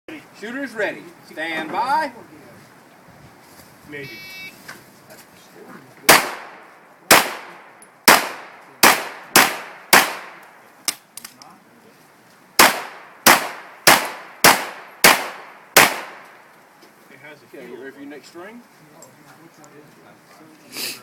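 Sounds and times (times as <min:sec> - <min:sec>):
pistol shots with echo: 0:06.1 - 0:10.5, 0:12.6 - 0:16.4.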